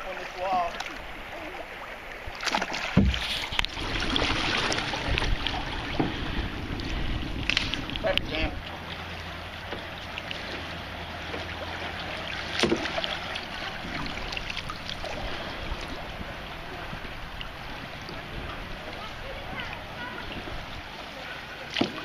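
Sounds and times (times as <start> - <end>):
water around canoe: 0.0 - 22.0
paddle ticks: 4.7 - 13.4.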